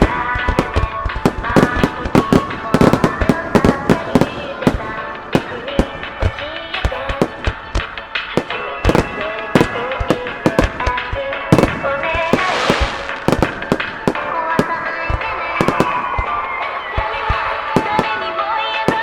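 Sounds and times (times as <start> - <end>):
firework shell bursts: 0.0 - 16.6
music: 0.0 - 19.0
hissing rush: 11.6 - 14.2.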